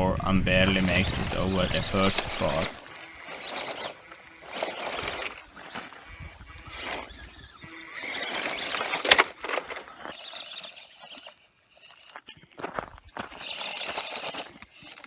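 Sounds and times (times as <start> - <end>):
gravel crunching under tyres: 0.0 - 15.0
toy car motor whining: 0.0 - 15.0.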